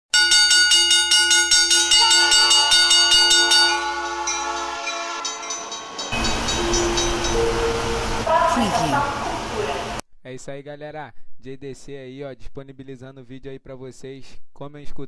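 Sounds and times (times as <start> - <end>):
train horn chord: 1.9 - 10.0.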